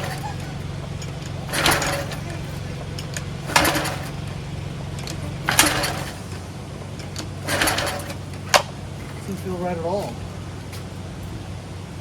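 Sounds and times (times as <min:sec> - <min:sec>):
recoil starter pulled: 0:00.0 - 0:09.6.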